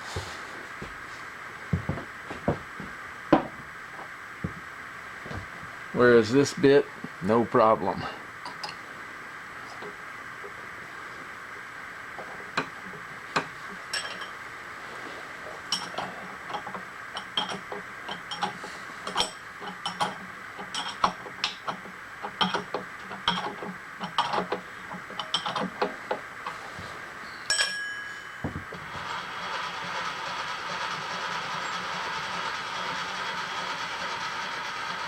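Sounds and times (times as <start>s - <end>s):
machine shop hum: 0.0s - 35.0s
metal tools clinking: 13.9s - 14.4s, 27.5s - 28.4s.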